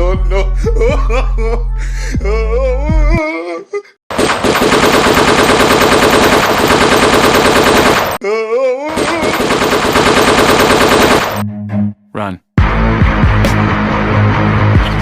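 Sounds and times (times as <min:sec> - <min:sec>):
machine-gun fire: 0:04.1 - 0:08.2, 0:09.0 - 0:11.4.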